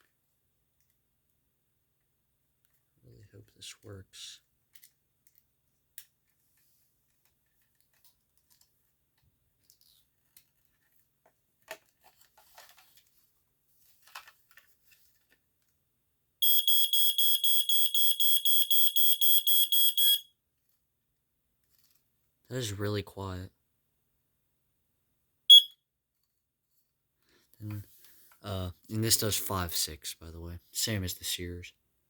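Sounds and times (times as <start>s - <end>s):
smoke alarm beeping: 16.4s - 20.3s, 25.5s - 25.8s.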